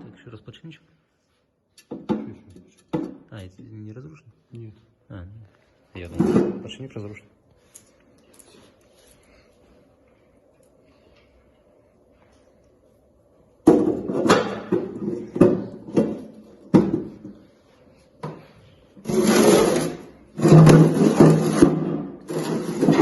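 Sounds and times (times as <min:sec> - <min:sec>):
rattling and scraping: 0:13.7 - 0:17.6, 0:18.4 - 0:23.0.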